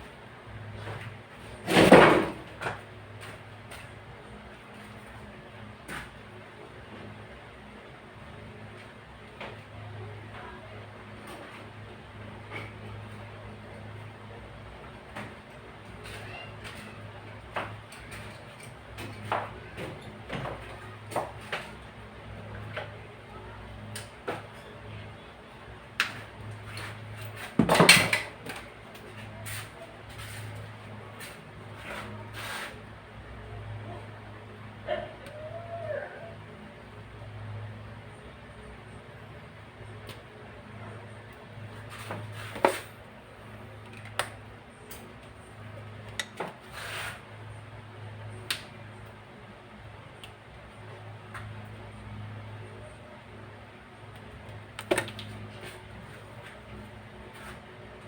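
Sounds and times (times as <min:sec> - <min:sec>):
short scrape: 0:32.3 - 0:32.8, 0:46.6 - 0:47.2.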